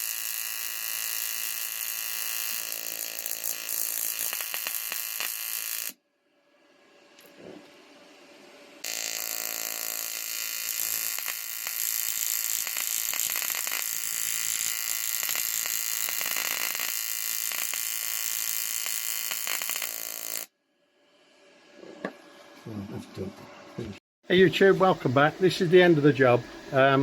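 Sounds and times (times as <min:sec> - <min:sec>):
welding arc buzzing and crackling: 0:00.0 - 0:06.0, 0:08.8 - 0:20.5.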